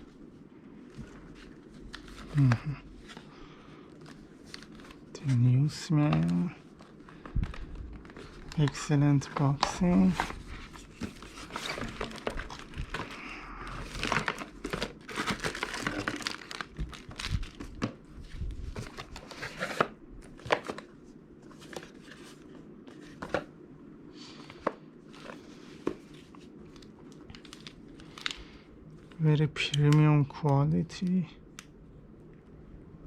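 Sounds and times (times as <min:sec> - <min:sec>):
packaging crinkling: 0:03.9 - 0:20.9, 0:25.1 - 0:29.2.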